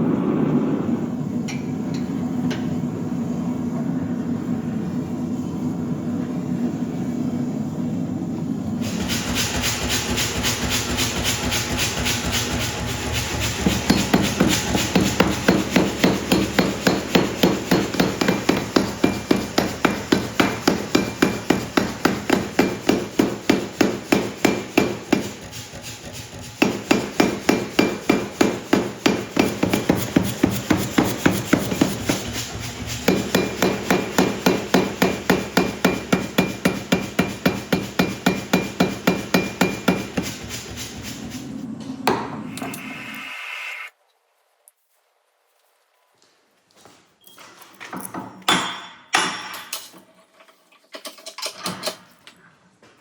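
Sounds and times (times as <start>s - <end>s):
hammer blows on hot steel: 8.8s - 41.4s.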